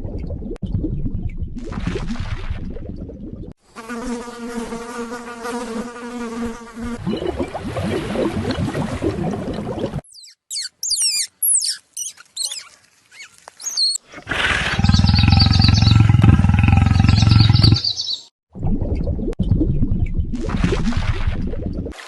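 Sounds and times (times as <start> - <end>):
short high animal chirps: 10.1 - 14.0
rough low pulsing animal call: 13.8 - 18.0
loud low steady animal call: 14.2 - 17.9.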